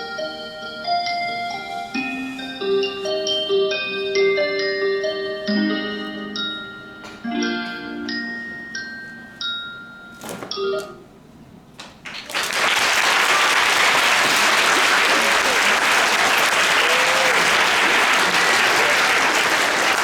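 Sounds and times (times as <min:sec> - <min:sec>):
audience applause: 0:12.0 - 0:20.0.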